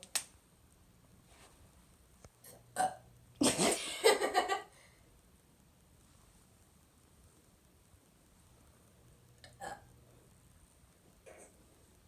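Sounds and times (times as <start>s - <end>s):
person burping: 2.5s - 4.0s, 9.4s - 9.9s.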